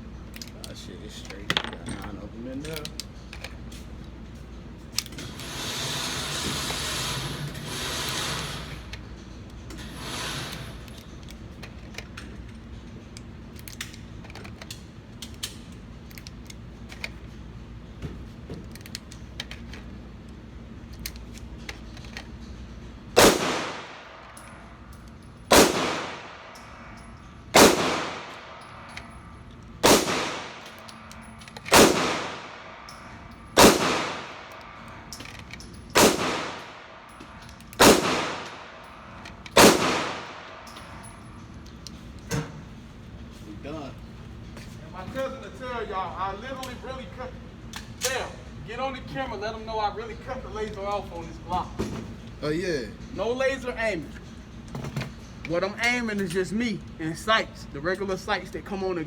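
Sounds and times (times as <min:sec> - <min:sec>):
pistol shots with echo: 0:23.2 - 0:24.3, 0:25.5 - 0:26.7, 0:27.5 - 0:28.7, 0:29.8 - 0:30.8, 0:31.7 - 0:32.9, 0:33.6 - 0:34.6, 0:36.0 - 0:37.0, 0:37.8 - 0:38.8, 0:39.6 - 0:40.7.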